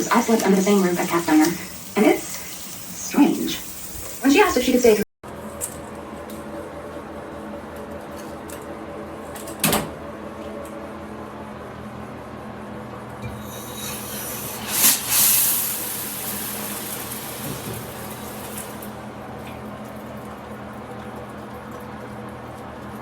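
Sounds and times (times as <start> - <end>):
water running from shower head: 0.0 - 5.0, 13.4 - 19.0
rush of spray: 13.9 - 18.8.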